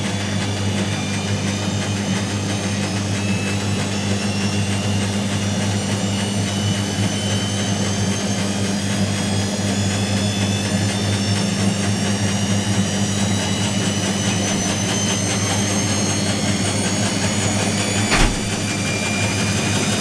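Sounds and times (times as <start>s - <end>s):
washing machine motor hum: 13.9s - 19.5s.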